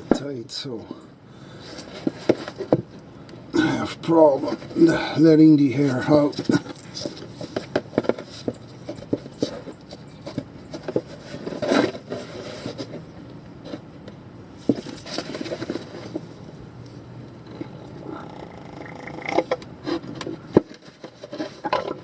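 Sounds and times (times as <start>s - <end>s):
rustling: 1.5s - 3.1s, 4.1s - 22.0s
plastic bottle and hose handling: 14.6s - 16.4s.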